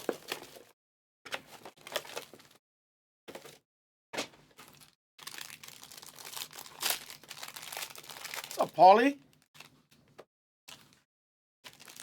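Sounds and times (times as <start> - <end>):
plastic wrapper crinkling and tearing: 4.6 - 9.7, 10.7 - 12.0.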